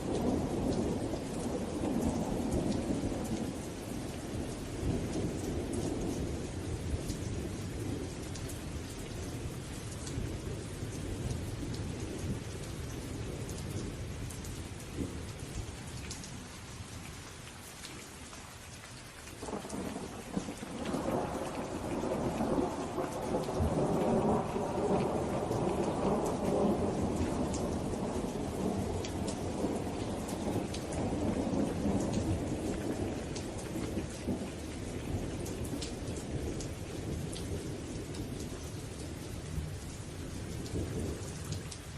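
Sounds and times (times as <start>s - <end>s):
steady rain pattering: 0.0s - 41.9s
thunder rumbling: 19.4s - 38.9s.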